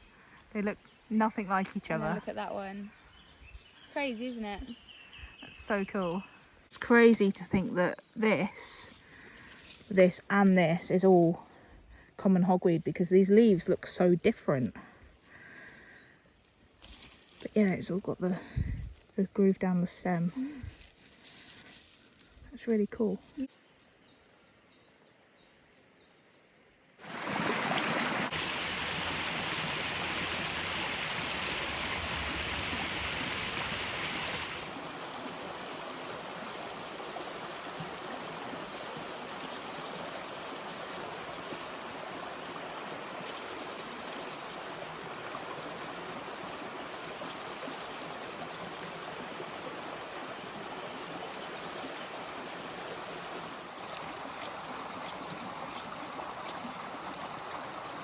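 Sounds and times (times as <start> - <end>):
stream water rushing: 27.0 - 58.0.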